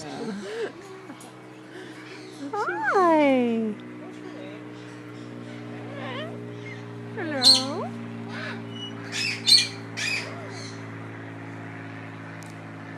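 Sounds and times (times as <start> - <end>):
bird squawking: 2.2 - 3.1, 4.7 - 10.8.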